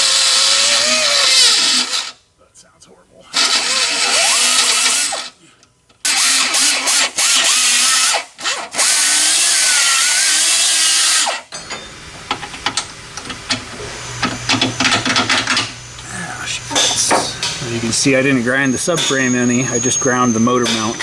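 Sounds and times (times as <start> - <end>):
grinder cutting metal: 0.0 - 2.2, 3.3 - 5.3, 6.1 - 11.5.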